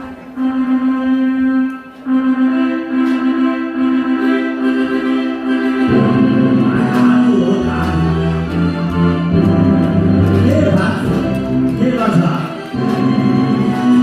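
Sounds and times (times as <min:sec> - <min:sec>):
organ-like chords: 0:00.0 - 0:14.0
person singing: 0:00.4 - 0:11.4
bass line: 0:05.8 - 0:14.0.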